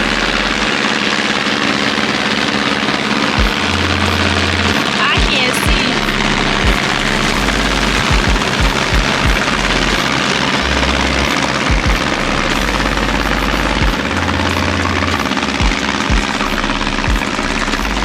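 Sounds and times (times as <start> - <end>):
wind buffeting microphone: 5.9 - 17.9.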